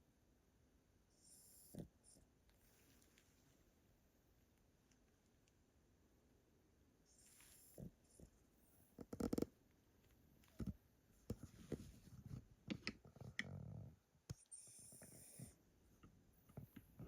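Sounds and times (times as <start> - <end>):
dog snoring: 1.1 - 2.2, 7.1 - 9.5, 13.2 - 15.6.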